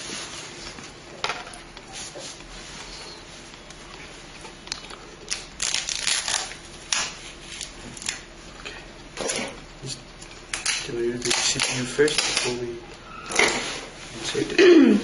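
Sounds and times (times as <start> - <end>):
packaging rustling and crinkling: 2.0 - 8.2.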